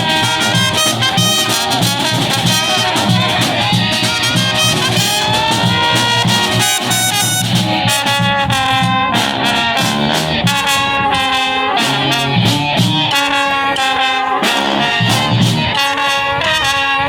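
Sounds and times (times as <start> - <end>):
low bass line: 0.0 - 13.7, 14.4 - 15.8
steady drum beat: 0.0 - 15.9
trumpets and trombones: 0.0 - 17.0.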